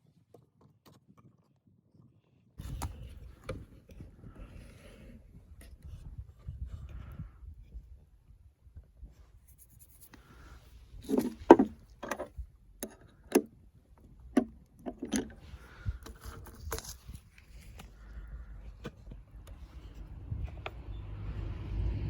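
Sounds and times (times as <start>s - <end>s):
hard objects knocking and clattering: 11.0s - 13.5s.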